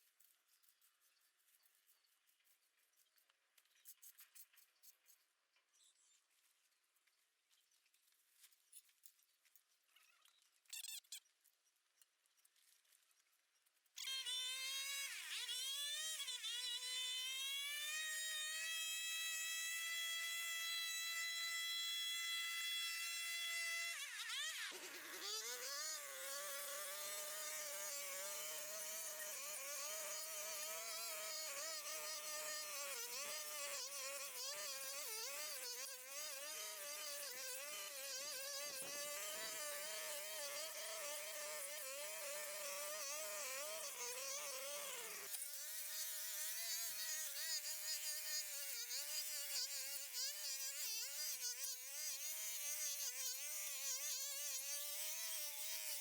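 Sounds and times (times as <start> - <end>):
small petrol engine buzzing: 21.3 - 56.0.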